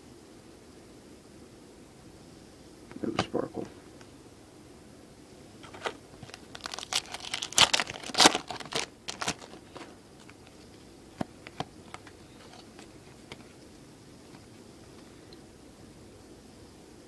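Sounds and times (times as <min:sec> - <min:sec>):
foil wrapper crinkling and tearing: 0:05.6 - 0:13.6.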